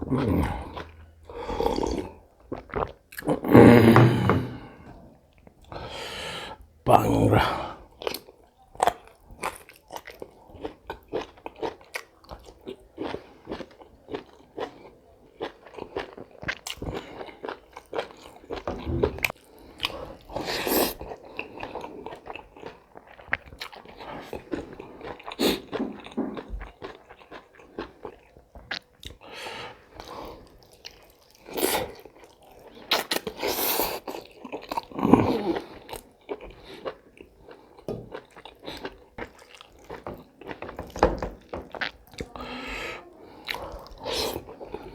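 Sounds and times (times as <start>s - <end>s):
crunchy biting and chewing: 30.0s - 42.4s.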